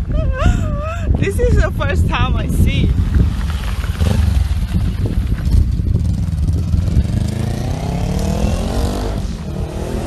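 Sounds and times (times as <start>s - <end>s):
traffic rumble: 0.0s - 10.0s
engine revving up: 6.6s - 10.0s.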